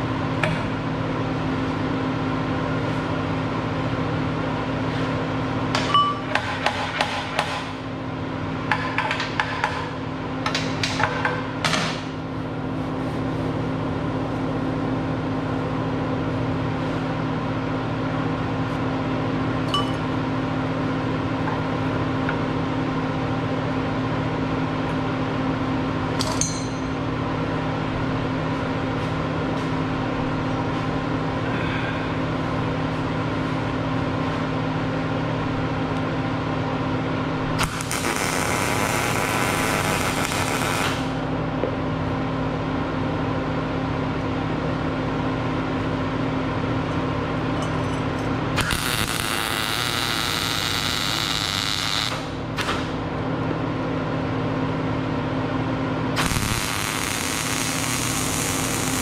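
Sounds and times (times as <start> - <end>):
steady machine hum: 0.0 - 59.0
metal parts and tools clinking: 26.2 - 26.9.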